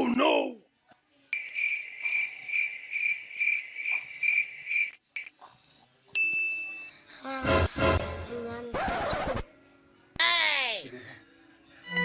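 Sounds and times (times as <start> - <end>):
cricket chirping: 1.3 - 5.3.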